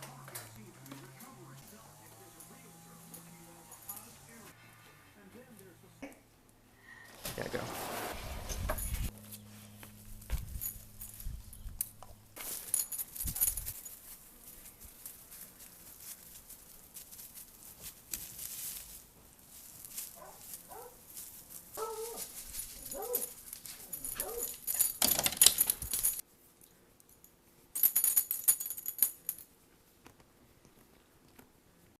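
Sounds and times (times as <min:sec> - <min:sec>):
collar tags jingling: 0:00.0 - 0:04.5, 0:08.7 - 0:26.2, 0:27.0 - 0:29.5
dog whining: 0:21.8 - 0:22.2.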